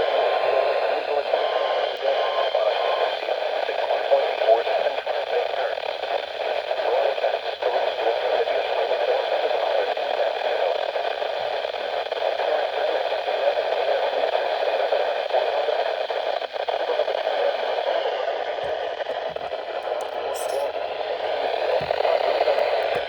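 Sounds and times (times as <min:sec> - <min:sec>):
radio static hiss: 0:00.0 - 0:23.0.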